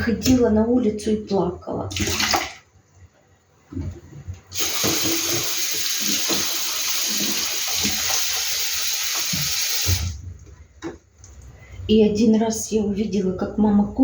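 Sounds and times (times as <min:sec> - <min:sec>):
tap water running into sink: 0:04.5 - 0:10.2.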